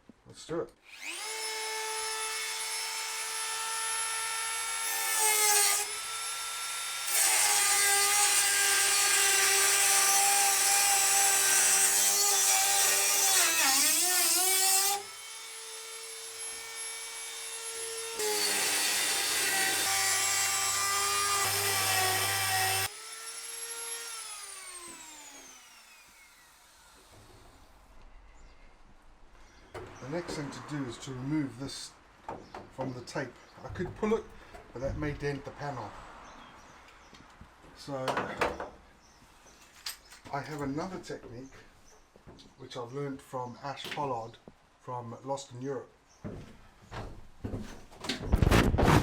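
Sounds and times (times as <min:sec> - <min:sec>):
rotary tool cutting metal: 0:01.0 - 0:27.0.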